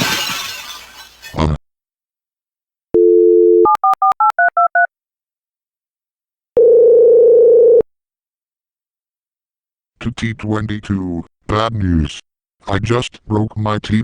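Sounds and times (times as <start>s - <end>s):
telephone dial tone: 6.6s - 7.9s
telephone ringing tone: 6.6s - 7.9s.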